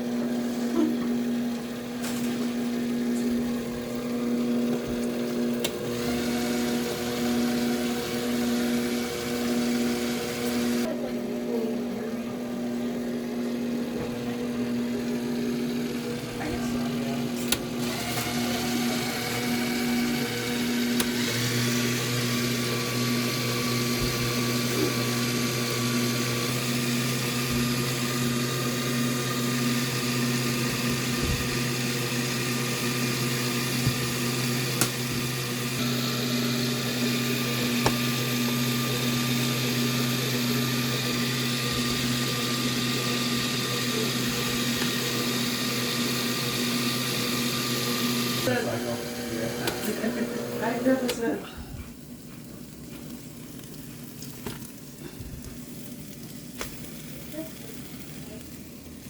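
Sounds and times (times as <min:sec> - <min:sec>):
small electric motor humming: 0:13.7 - 0:51.5.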